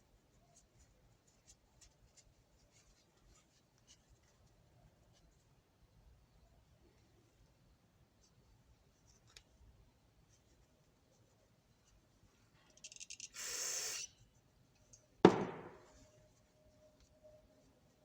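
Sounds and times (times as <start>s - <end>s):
aerosol spray hiss: 13.4s - 14.1s
sharp knock: 15.3s - 15.9s.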